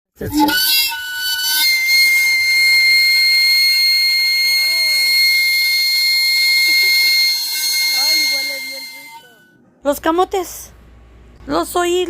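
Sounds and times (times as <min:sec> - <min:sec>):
shrill steam whistle: 0:00.2 - 0:09.6.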